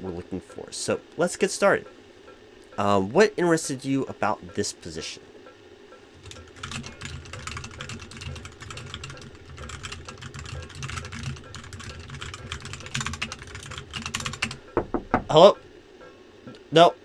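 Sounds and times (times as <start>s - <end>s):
keyboard typing: 6.2s - 15.5s.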